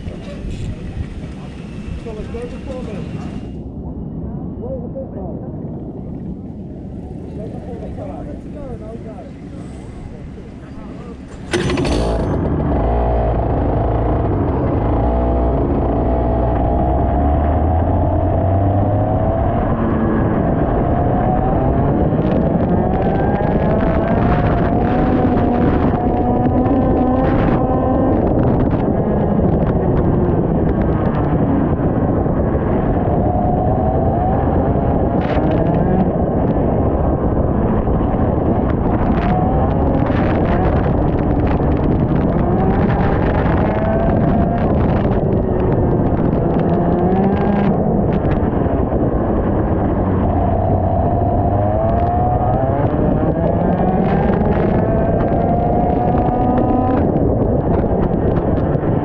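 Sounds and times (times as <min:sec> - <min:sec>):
rushing wind noise on microphone: 0:00.0 - 0:59.0
kart engine racing: 0:07.0 - 0:59.0
two-stroke kart engine running: 0:10.5 - 0:15.4.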